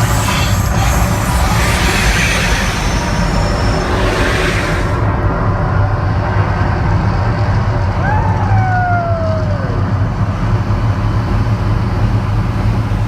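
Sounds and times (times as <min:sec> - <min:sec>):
deep steady rumble: 0:00.0 - 0:13.0
voice whooping: 0:08.0 - 0:10.1.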